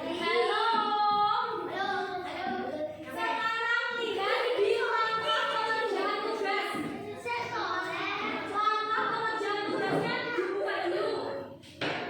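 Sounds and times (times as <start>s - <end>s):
children singing: 0.0s - 12.0s.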